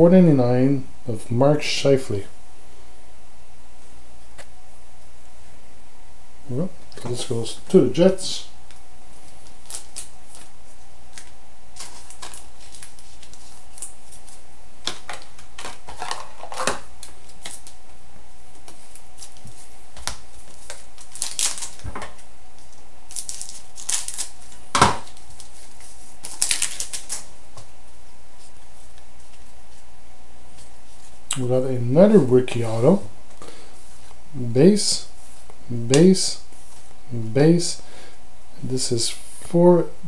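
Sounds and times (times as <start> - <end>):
faint hum: 0.0 - 40.0
cards being handled: 8.7 - 17.8, 18.5 - 27.7.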